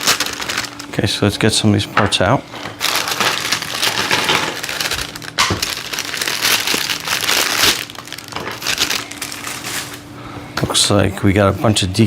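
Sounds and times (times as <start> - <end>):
packaging crinkling and rustling: 0.0 - 1.3, 2.6 - 10.1.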